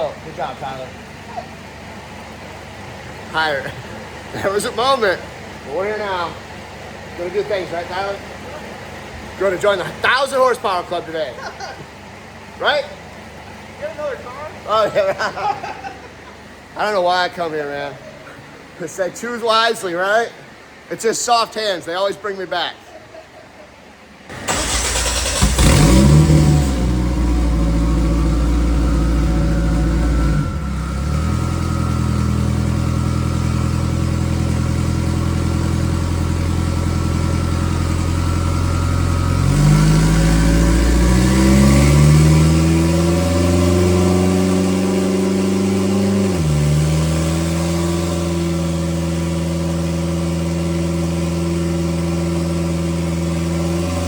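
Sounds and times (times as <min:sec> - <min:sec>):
race car engine revving: 0:24.3 - 0:54.0.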